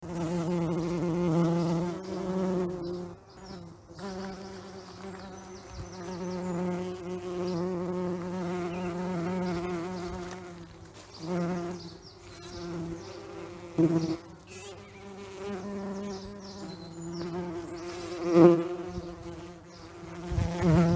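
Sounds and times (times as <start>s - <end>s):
bees buzzing in flight: 0.0s - 20.9s.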